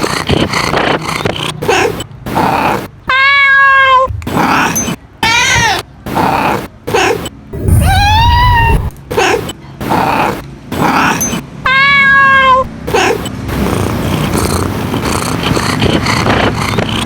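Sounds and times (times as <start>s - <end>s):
cat meowing: 1.7s - 5.8s, 7.6s - 9.4s, 10.8s - 13.3s.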